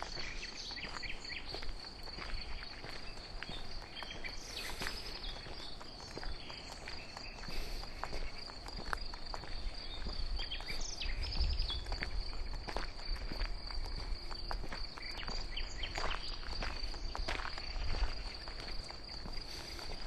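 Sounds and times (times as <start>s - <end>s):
crickets chirring: 0.0s - 20.0s
soft footsteps on a path: 0.0s - 20.0s.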